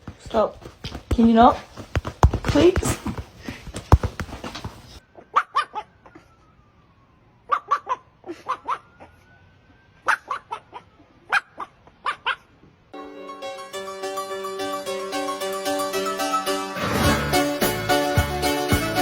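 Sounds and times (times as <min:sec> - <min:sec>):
dog yipping: 0:05.3 - 0:05.9, 0:07.5 - 0:09.2, 0:10.0 - 0:12.5.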